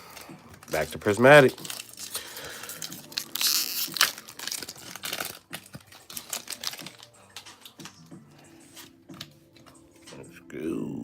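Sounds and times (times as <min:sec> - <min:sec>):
foil wrapper crinkling: 0:00.1 - 0:08.0.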